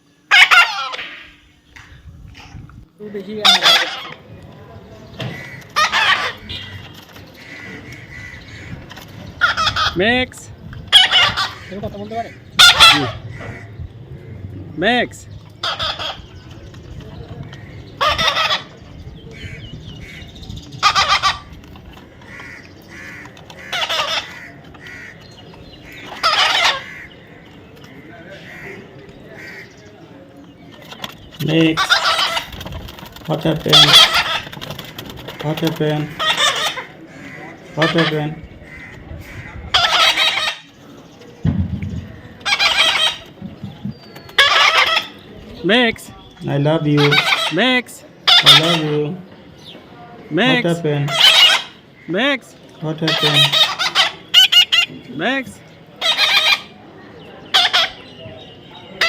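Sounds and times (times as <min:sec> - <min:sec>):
parrot squawking: 0:00.3 - 0:01.1, 0:03.4 - 0:04.2, 0:05.3 - 0:08.8, 0:09.4 - 0:10.3, 0:10.9 - 0:14.8, 0:15.6 - 0:16.4, 0:18.0 - 0:21.5, 0:22.2 - 0:25.2, 0:25.9 - 0:27.2, 0:31.7 - 0:32.6, 0:33.6 - 0:34.5, 0:36.1 - 0:40.7, 0:42.4 - 0:43.4, 0:44.4 - 0:45.3, 0:46.8 - 0:49.1, 0:50.4 - 0:52.1, 0:52.9 - 0:55.0, 0:55.9 - 0:56.8, 0:57.5 - 0:58.2.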